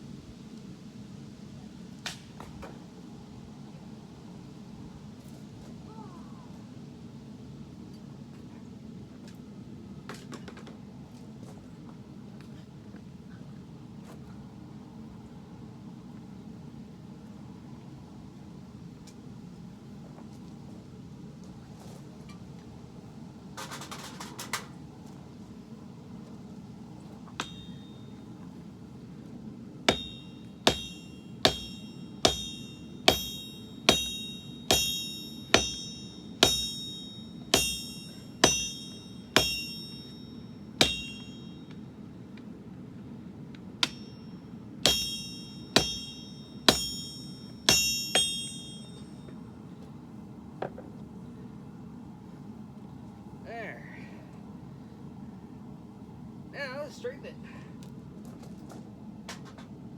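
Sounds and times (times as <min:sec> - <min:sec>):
hammer striking blade on anvil: 0:27.4 - 0:27.9, 0:29.9 - 0:41.8, 0:43.8 - 0:49.3.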